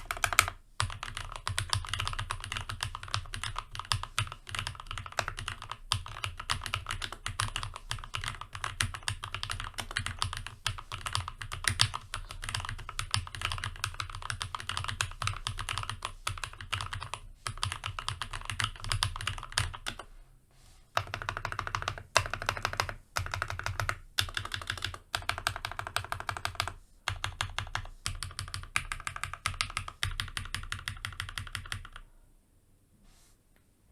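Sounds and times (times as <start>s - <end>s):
mechanical keyboard typing: 0.0s - 20.1s, 21.0s - 32.0s.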